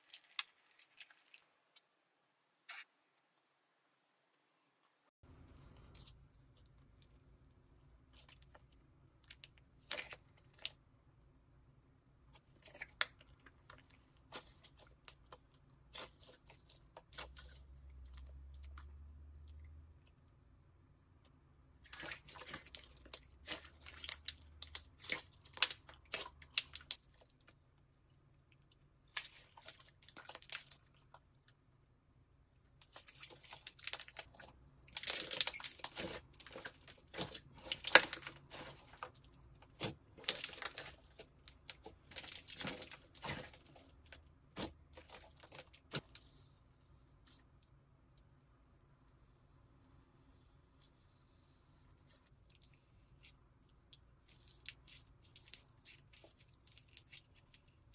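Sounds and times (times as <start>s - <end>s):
slime crackling and popping: 22.1s - 27.4s.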